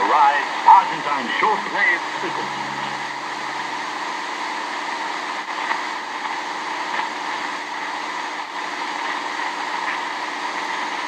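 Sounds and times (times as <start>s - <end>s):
radio static hiss: 0.0s - 5.9s
faint low hum: 0.5s - 4.7s.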